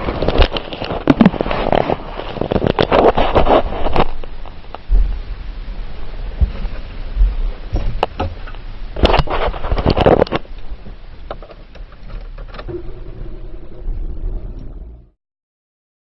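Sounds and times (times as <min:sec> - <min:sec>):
car cabin rumble: 0:04.3 - 0:15.1
knocks and rattles: 0:06.4 - 0:10.6.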